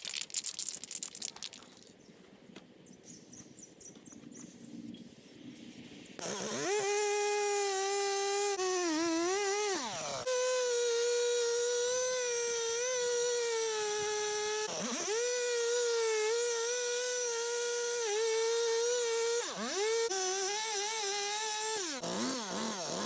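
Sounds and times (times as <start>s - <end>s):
chainsaw cutting wood: 6.2s - 23.0s.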